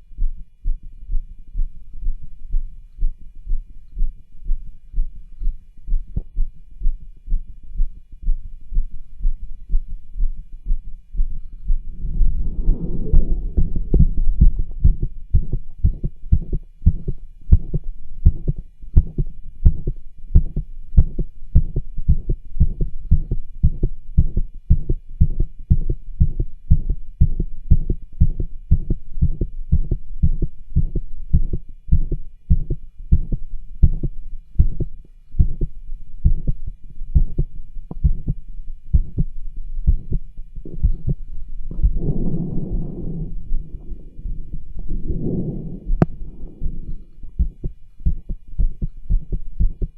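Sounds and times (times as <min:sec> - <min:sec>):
heartbeat through stethoscope: 0:00.0 - 0:49.9
heart rubs and murmurs: 0:00.2 - 0:49.9.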